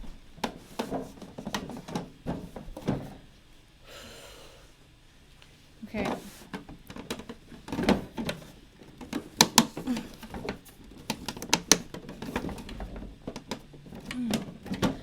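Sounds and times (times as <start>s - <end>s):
plastic parts clicking: 9.0s - 15.0s.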